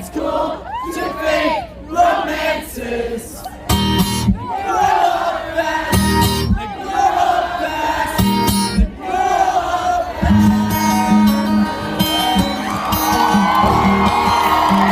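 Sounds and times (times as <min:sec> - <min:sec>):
crowd noise: 0:00.0 - 0:14.9
strummed guitar: 0:03.7 - 0:04.4, 0:10.2 - 0:14.9
bass guitar: 0:10.2 - 0:14.9.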